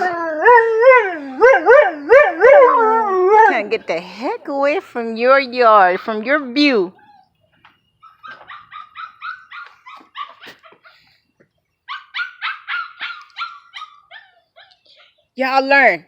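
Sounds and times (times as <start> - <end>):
dog barking in high yips: 8.2 - 10.8, 11.9 - 14.7.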